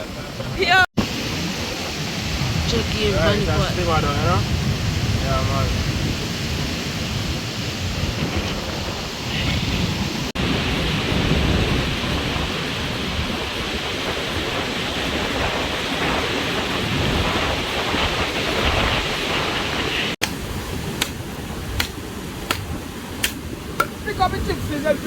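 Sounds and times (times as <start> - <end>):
wind buffeting microphone: 0.0 - 25.0
sharp knocks: 21.8 - 24.0.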